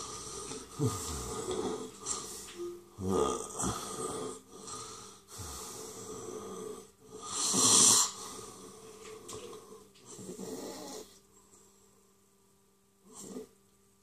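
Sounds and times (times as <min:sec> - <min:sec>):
person breathing hard: 0:00.0 - 0:02.6, 0:03.6 - 0:09.1.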